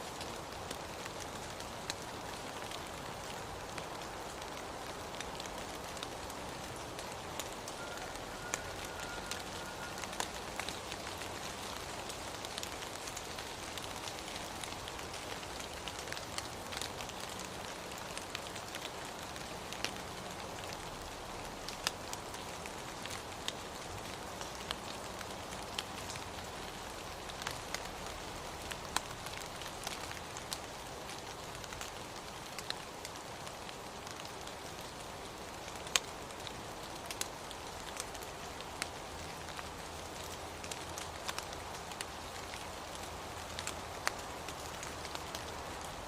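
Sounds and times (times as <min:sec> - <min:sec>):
raindrops ticking on a surface: 0:00.0 - 0:46.0
steady rain hiss: 0:00.0 - 0:46.0.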